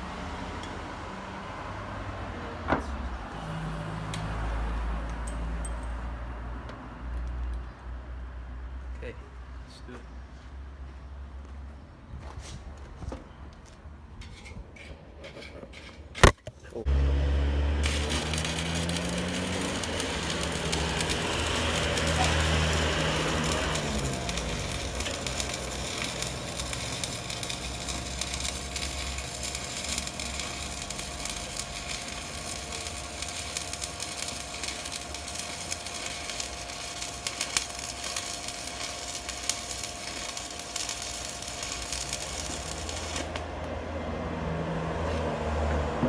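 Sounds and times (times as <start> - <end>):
welding arc crackling: 17.0 - 43.6.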